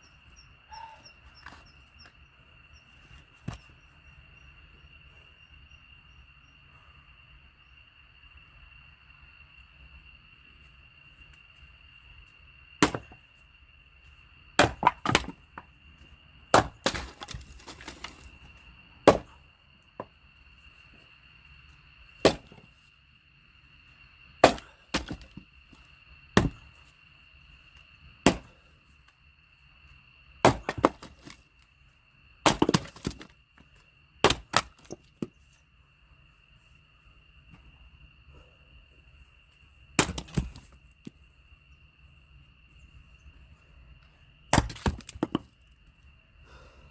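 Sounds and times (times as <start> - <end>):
insects droning: 0.0 - 46.9
axe chopping firewood: 12.8 - 13.2, 14.6 - 15.4, 16.5 - 18.3, 19.0 - 19.4, 22.2 - 22.7, 24.4 - 25.5, 26.3 - 26.8, 28.2 - 28.6, 30.4 - 31.4, 32.4 - 33.3, 34.2 - 35.4, 40.0 - 40.8, 44.5 - 45.5.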